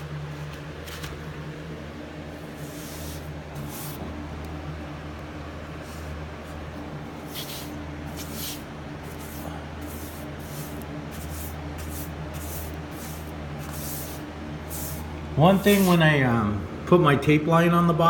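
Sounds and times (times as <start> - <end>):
steady low hum: 0.0 - 18.0
paintbrush swishing on wood: 2.5 - 4.0, 7.2 - 16.0.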